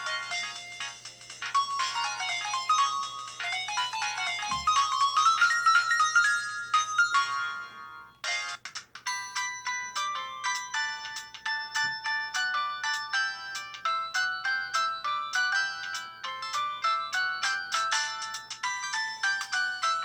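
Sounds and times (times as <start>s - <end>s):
electronic phone ringtone: 0.0s - 8.3s
quick ringtone of repeated notes: 0.0s - 20.0s.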